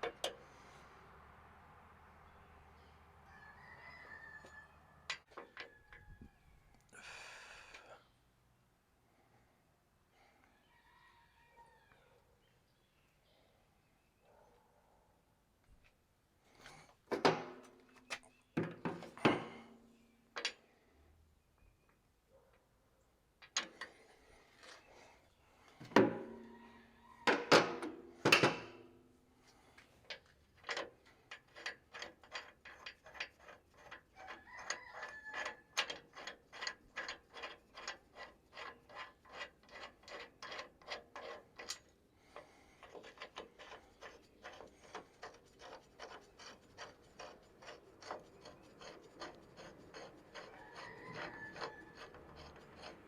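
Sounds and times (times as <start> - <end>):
hand tool rasping: 31.2 - 53.0.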